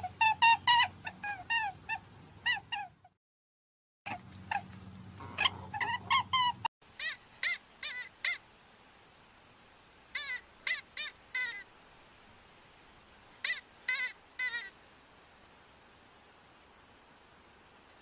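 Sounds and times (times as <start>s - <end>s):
small animal squeaking: 0.0s - 3.1s, 4.1s - 8.4s, 10.2s - 11.7s, 13.4s - 14.8s.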